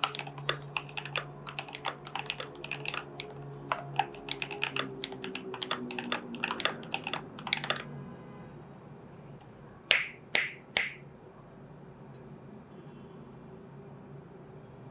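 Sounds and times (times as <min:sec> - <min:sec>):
fast mechanical keyboard typing: 0:00.0 - 0:07.9
sharp knocks: 0:09.9 - 0:11.0.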